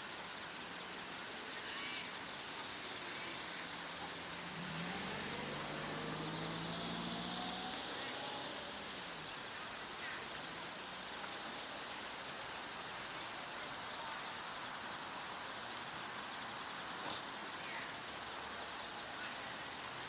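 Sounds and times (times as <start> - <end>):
outdoor background noise: 0.0 - 20.0
low engine hum: 2.6 - 13.1.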